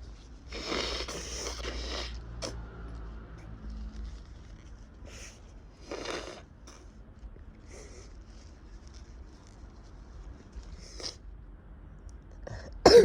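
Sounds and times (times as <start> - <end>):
person sniffing: 0.5 - 2.6
heavy breathing: 12.3 - 12.8.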